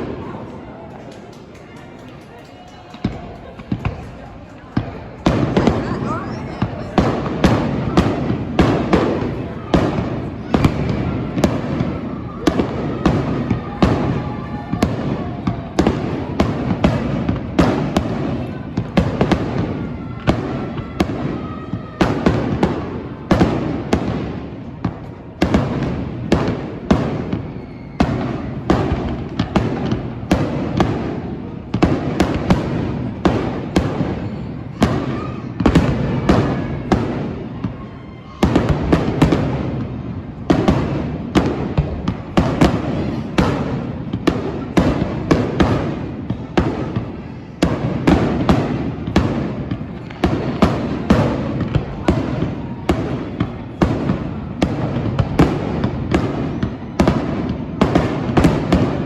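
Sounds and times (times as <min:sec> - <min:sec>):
fireworks bangs and crackles: 0:00.0 - 0:59.0.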